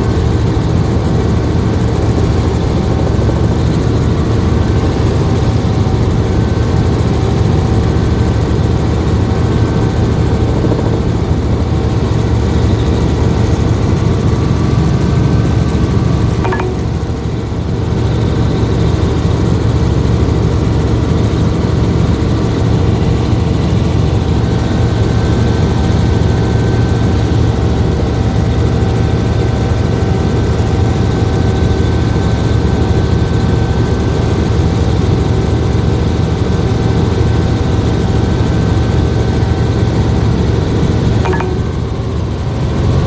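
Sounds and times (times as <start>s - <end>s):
helicopter engine and rotor drone: 0.0s - 43.0s.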